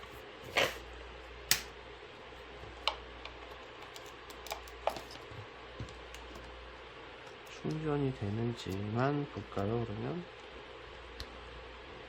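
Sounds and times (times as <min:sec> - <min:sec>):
charger cable and tablet clicks: 0:02.8 - 0:05.2.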